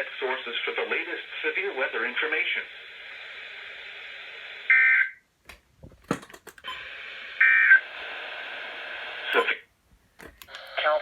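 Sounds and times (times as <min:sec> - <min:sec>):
radio receiver hiss: 0:00.0 - 0:04.8, 0:06.6 - 0:09.7, 0:10.4 - 0:11.0
weather radio data tones: 0:06.7 - 0:09.7.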